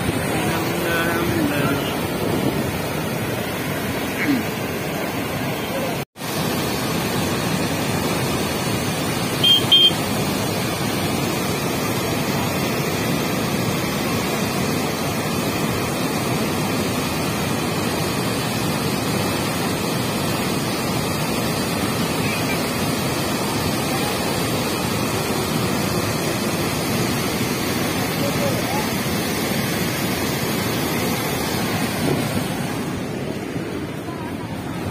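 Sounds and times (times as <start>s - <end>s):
water rushing through dam spillway: 0.0s - 34.9s
short high beeps: 9.4s - 10.0s.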